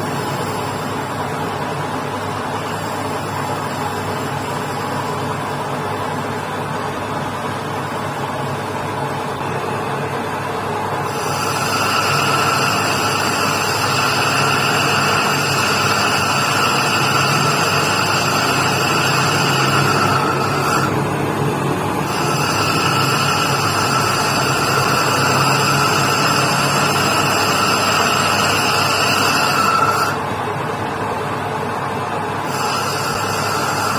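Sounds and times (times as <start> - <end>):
metal lathe low hum: 0.0 - 33.9
high-pitched cutting whine: 7.6 - 33.9.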